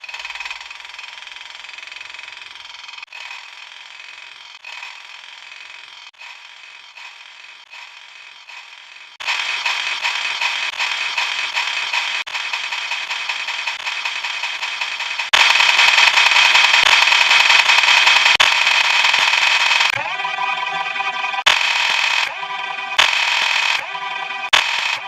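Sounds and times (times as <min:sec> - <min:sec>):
looped character sound clip: 0:13.1 - 0:25.0.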